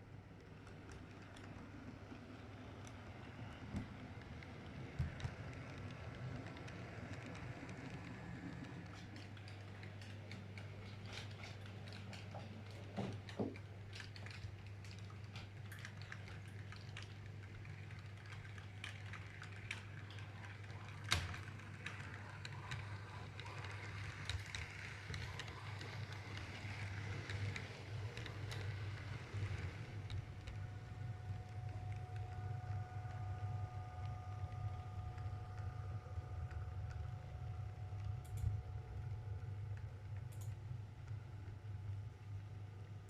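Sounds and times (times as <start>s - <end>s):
model train motor hum: 17.7s - 32.0s.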